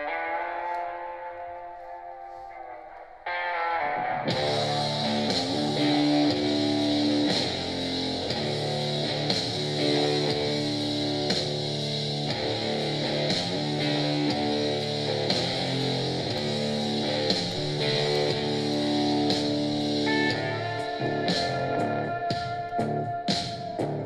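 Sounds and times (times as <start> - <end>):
song with electric guitar and beat: 0.0 - 24.0.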